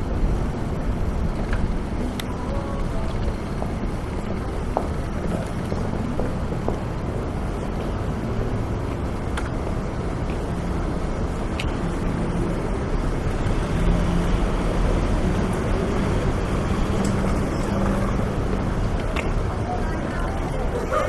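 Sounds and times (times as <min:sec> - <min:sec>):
traffic rumble: 0:00.0 - 0:21.0.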